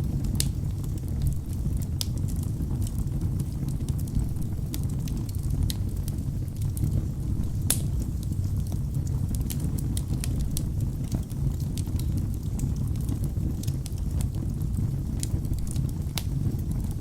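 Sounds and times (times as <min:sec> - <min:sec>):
fire flames rumbling: 0:00.0 - 0:17.0
logs crackling and snapping: 0:00.2 - 0:03.0, 0:07.5 - 0:14.4, 0:15.2 - 0:17.0.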